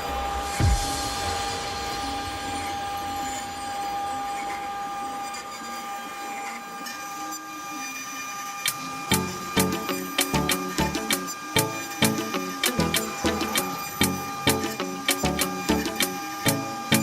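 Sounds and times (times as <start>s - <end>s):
power tool motor whining: 4.3s - 17.0s.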